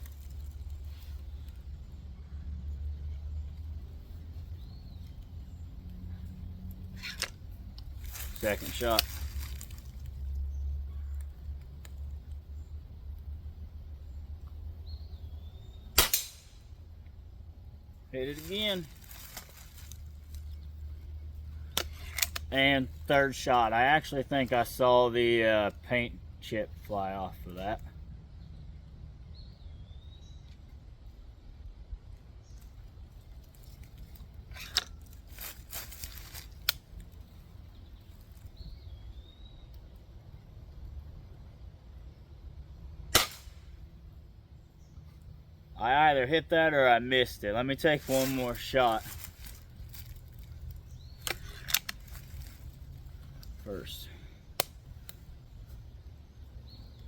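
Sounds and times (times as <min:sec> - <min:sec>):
air rifle shot: 0:16.0 - 0:16.6, 0:43.1 - 0:43.8
slug hitting steel target: 0:16.0 - 0:16.6, 0:43.1 - 0:43.7.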